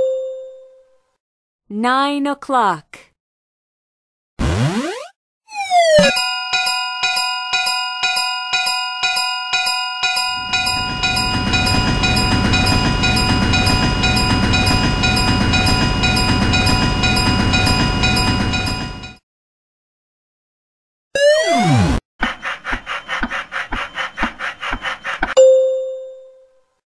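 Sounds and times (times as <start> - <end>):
railroad crossing bell ringing: 6.0 - 19.2
train passing: 10.4 - 19.2.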